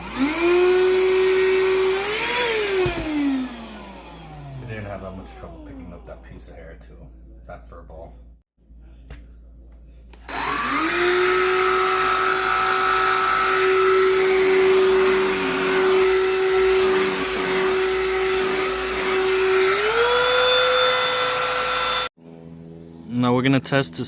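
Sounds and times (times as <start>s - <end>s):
handheld vacuum motor whine: 0.0s - 4.6s, 10.3s - 22.2s.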